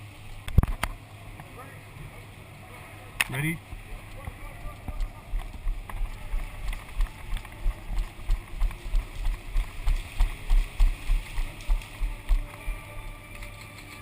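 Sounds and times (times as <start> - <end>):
light clicks of gear: 4.1 - 14.0.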